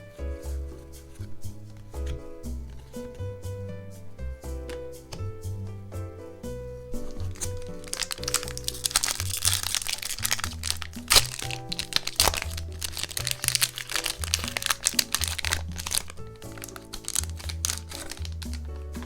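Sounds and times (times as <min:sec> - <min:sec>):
background music with bass line: 0:00.0 - 0:19.0
packaging crinkling and crackling: 0:07.0 - 0:19.0.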